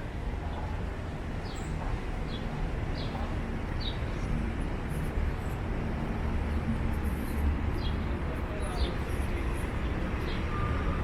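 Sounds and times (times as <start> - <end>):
passing traffic rumble: 0.0 - 11.0.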